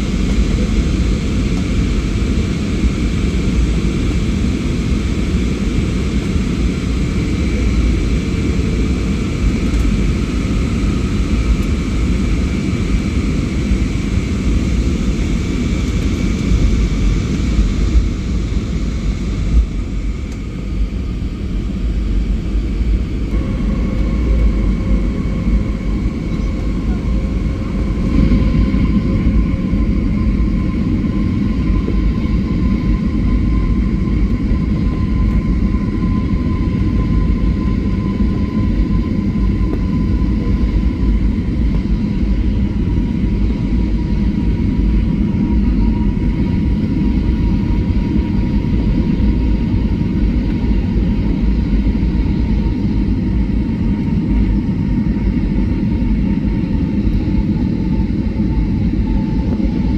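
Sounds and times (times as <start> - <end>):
jet engine cabin rumble: 0.0 - 59.9
thin engine whine: 0.0 - 59.9.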